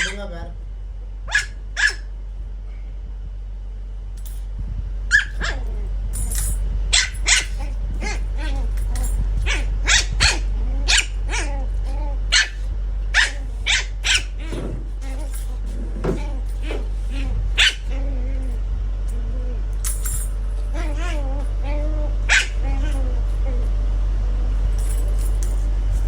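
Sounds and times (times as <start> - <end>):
puppy yapping: 0.0 - 0.2, 1.3 - 2.1, 5.1 - 5.8, 6.9 - 19.2, 20.7 - 23.7.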